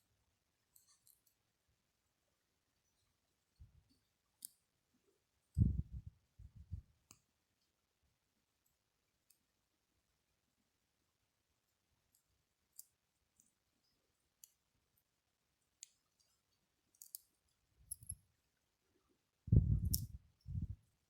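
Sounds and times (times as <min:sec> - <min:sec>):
small clicks of tools: 0:00.7 - 0:01.4, 0:04.4 - 0:04.6, 0:15.8 - 0:18.2.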